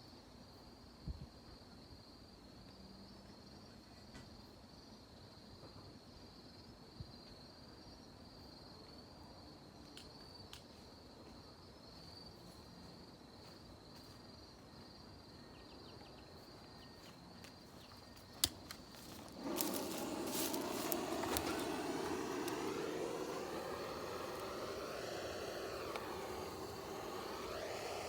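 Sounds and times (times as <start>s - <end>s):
insect chirping: 13.3s - 28.0s
rushing noise: 19.2s - 28.0s.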